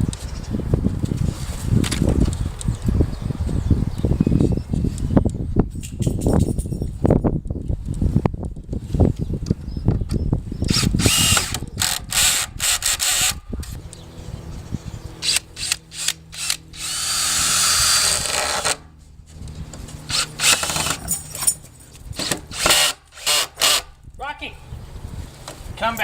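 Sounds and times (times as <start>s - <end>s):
cordless drill driving screws: 10.7s - 13.8s, 15.2s - 18.9s, 20.0s - 21.1s, 22.2s - 23.9s.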